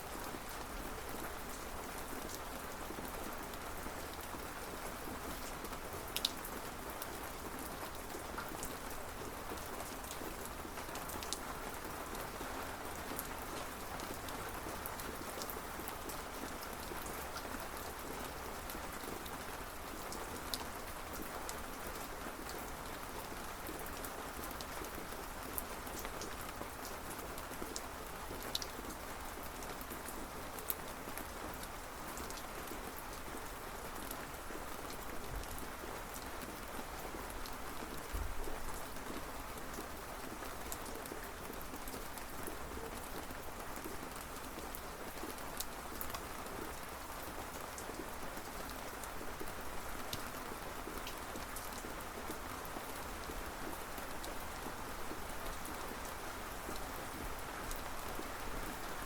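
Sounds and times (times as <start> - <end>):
steady rainfall: 0.0 - 59.0.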